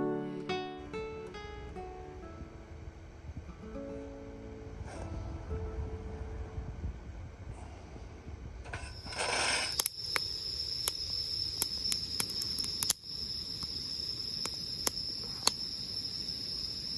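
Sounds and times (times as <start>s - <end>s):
noisy rustle: 1.4s - 10.8s
insects trilling: 8.9s - 16.9s
sharp clicks: 9.0s - 16.7s.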